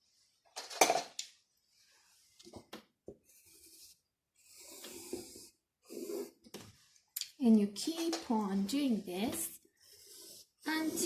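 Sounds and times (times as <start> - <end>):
pencil scratching on paper: 3.2 - 6.9, 8.7 - 11.0.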